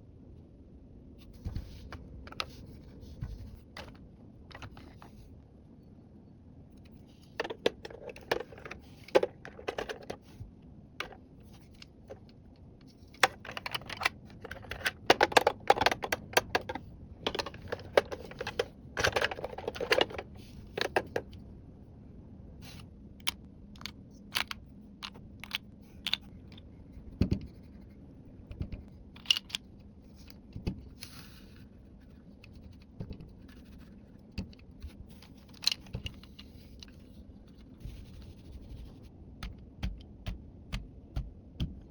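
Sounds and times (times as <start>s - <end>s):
plastic pieces clicking: 13.2s - 21.3s.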